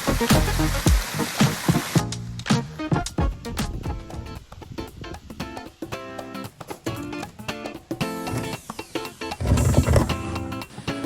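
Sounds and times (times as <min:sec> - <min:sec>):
acoustic guitar music: 0:06.0 - 0:11.0.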